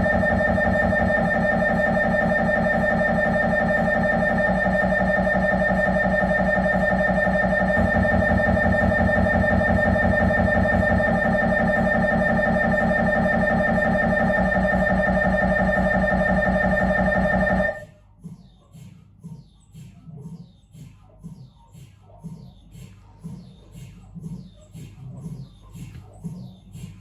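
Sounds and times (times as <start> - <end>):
mri scanner pulsing buzz: 0.0 - 17.8.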